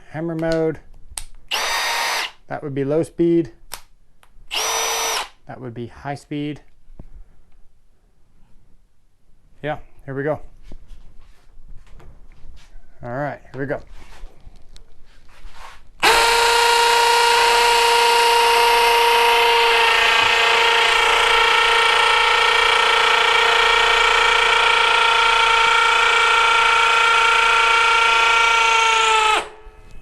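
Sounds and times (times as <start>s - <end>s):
hammer drill drilling into concrete: 1.5s - 2.4s, 4.5s - 5.4s, 16.0s - 29.5s.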